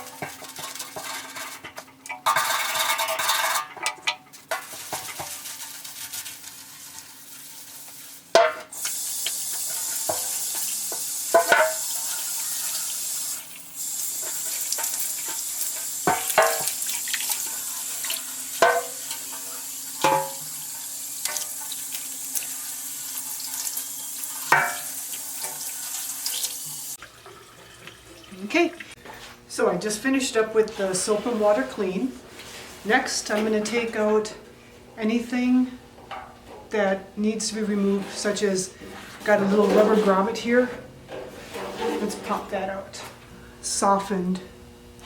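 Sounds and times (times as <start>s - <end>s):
running water hissing: 4.6s - 29.0s.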